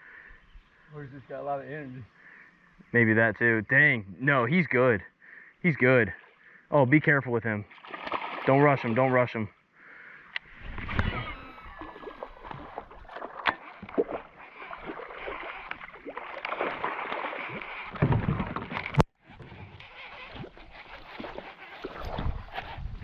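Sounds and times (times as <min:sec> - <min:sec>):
river water splashing: 0:07.6 - 0:09.3, 0:10.2 - 0:19.0, 0:19.9 - 0:22.8.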